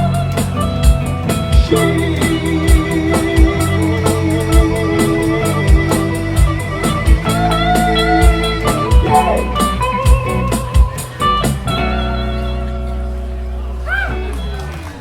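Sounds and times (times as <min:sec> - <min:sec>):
steady drum beat: 0:00.0 - 0:11.8
electric guitar with bent notes: 0:00.0 - 0:15.0.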